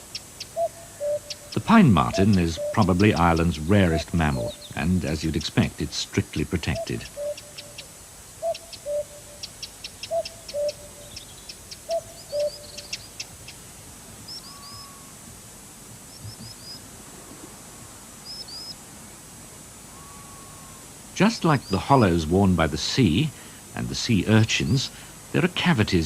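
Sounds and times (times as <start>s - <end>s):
cuckoo calling: 0.0s - 13.6s, 14.3s - 15.2s, 19.9s - 22.1s
small birds chirping: 0.0s - 15.2s, 16.0s - 16.9s, 18.2s - 18.8s.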